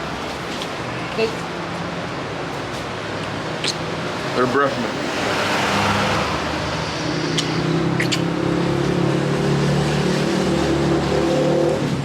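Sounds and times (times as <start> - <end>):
high squeaks: 6.8 - 8.4.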